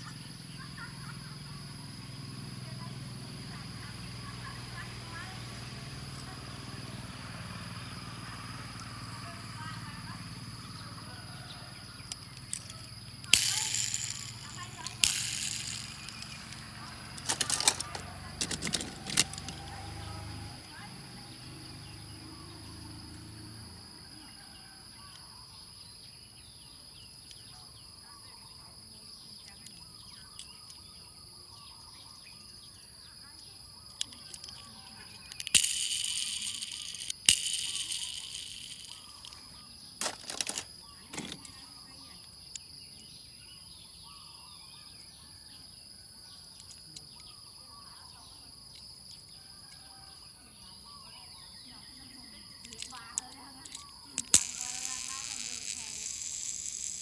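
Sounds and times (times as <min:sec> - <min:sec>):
high insect drone: 0:00.0 - 0:27.8, 0:34.0 - 0:44.5, 0:46.6 - 0:57.0
high-pitched insect drone: 0:07.8 - 0:18.4, 0:34.0 - 0:39.5, 0:52.0 - 0:57.0.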